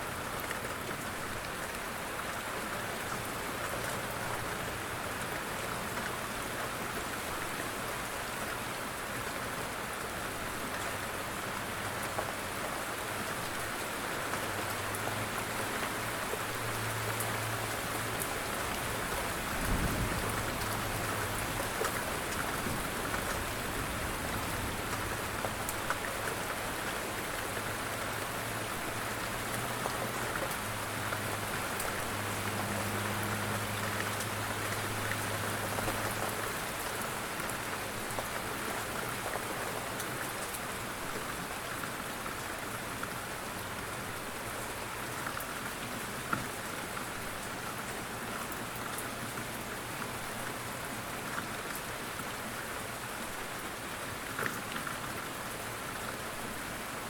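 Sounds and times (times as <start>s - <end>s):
rain drops ticking: 0.0s - 57.0s.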